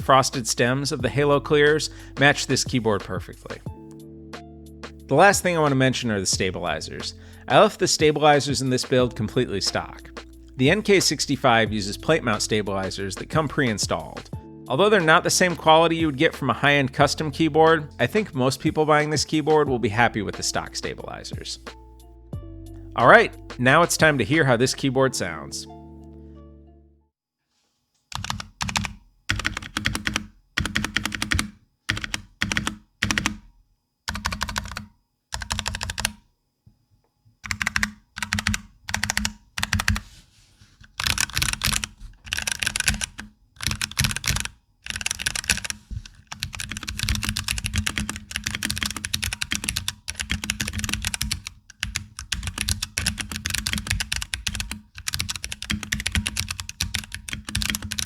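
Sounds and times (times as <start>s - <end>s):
mechanical keyboard typing: 28.1s - 33.4s, 34.1s - 36.2s, 37.4s - 40.0s, 40.8s - 58.0s.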